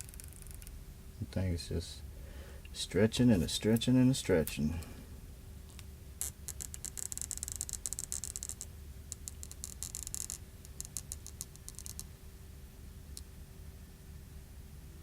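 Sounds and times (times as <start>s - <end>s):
adhesive strip crackling as pulled: 0.0s - 0.8s.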